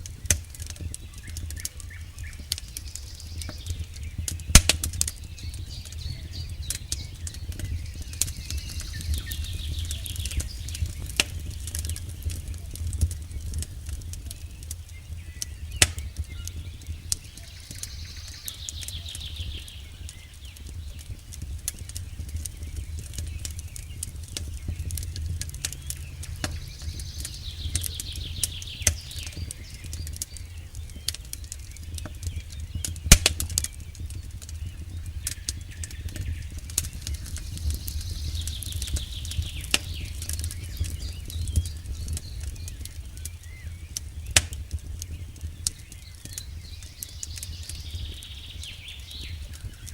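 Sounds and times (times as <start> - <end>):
campfire crackling and popping: 0.0 - 49.9
low steady rumble: 0.0 - 49.9.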